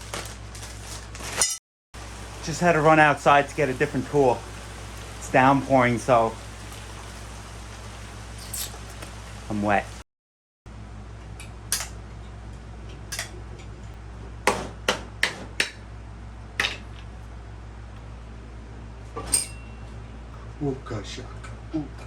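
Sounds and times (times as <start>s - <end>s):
metal tools clinking on engine parts: 8.4s - 9.0s, 19.2s - 19.9s.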